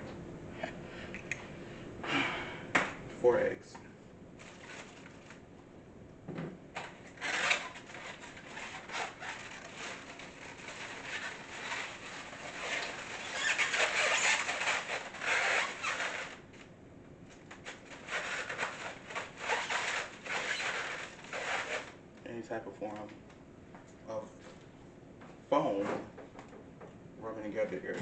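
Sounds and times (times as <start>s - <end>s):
foam egg carton squeaking: 7.1s - 16.5s, 17.7s - 22.0s.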